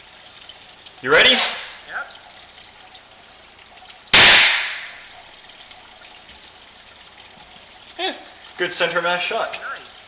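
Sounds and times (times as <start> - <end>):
paintball pistol shot: 4.2 - 5.0.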